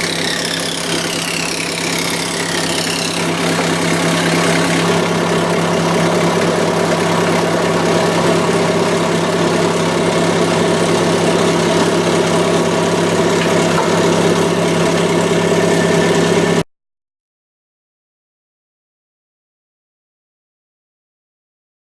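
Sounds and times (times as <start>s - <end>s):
machine hum: 0.0s - 16.6s.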